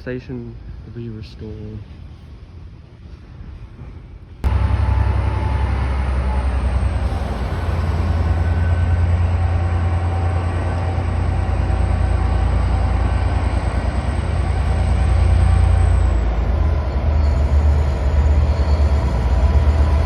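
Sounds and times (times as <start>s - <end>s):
train rumbling past: 0.0s - 20.0s
faint whining tones: 4.5s - 11.2s.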